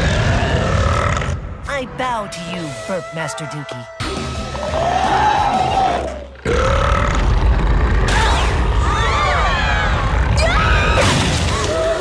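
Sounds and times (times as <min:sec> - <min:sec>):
long loud cartoon burp: 0:06.4 - 0:08.1.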